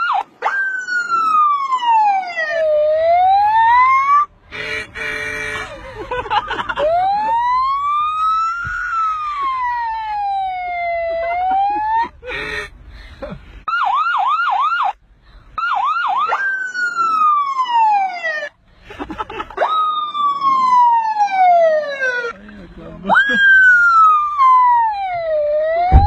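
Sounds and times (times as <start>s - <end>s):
boy imitating a siren: 0.0s - 4.3s, 6.8s - 12.2s, 15.6s - 18.5s, 19.6s - 22.4s, 23.1s - 26.0s.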